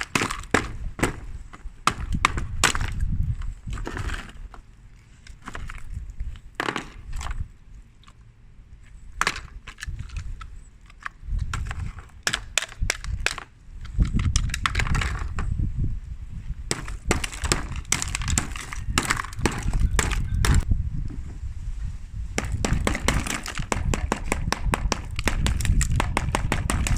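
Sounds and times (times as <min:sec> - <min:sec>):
crunching and cracking snaps: 0:09.2 - 0:15.4, 0:16.7 - 0:20.6, 0:22.4 - 0:26.9.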